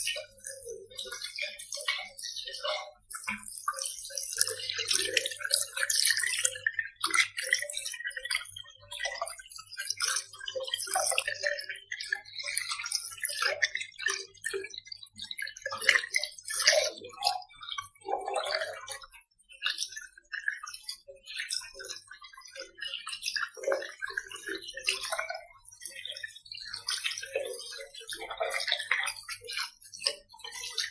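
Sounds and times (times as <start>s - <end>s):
water splashing and dripping: 0.1s - 20.8s.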